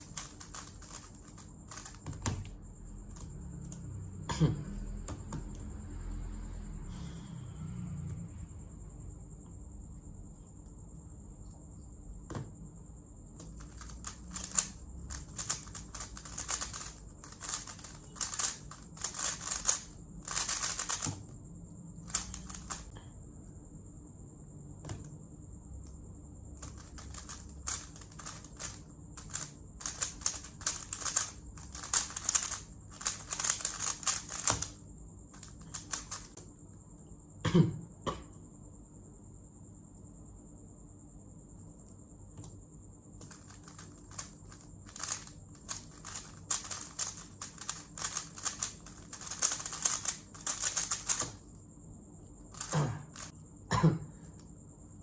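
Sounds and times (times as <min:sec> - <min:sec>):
speedcube clattering: 0:00.0 - 0:02.5, 0:13.4 - 0:21.3, 0:22.0 - 0:22.9, 0:26.6 - 0:36.4, 0:43.2 - 0:51.4, 0:52.5 - 0:53.3.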